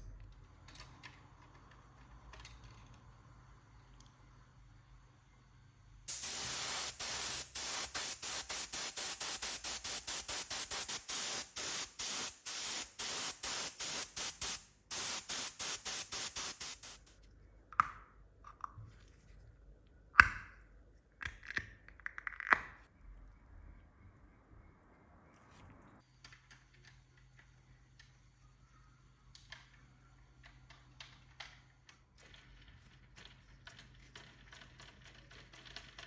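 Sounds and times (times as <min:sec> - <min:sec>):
hissing spray bursts: 0:06.1 - 0:17.2.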